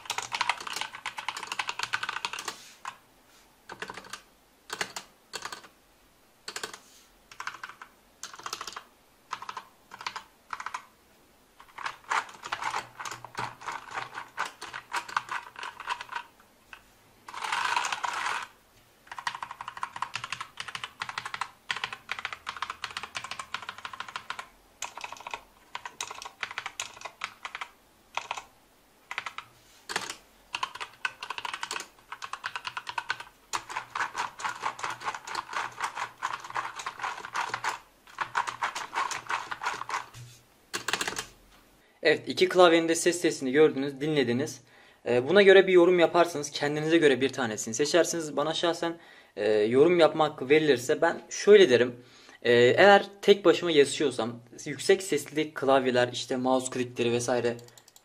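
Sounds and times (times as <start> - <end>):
typing on a mechanical keyboard: 0.0 - 3.0, 3.7 - 5.7, 6.5 - 10.9, 11.6 - 16.3, 17.3 - 18.5, 19.1 - 28.5, 29.1 - 40.1, 40.8 - 41.3, 57.6 - 58.0.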